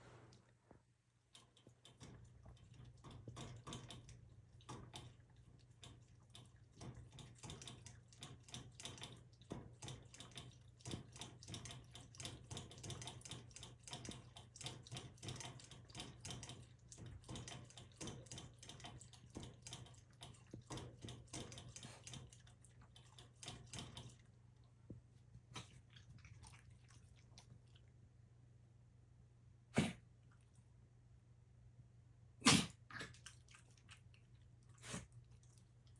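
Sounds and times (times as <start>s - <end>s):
dog lapping water: 1.5s - 24.4s, 25.5s - 27.9s.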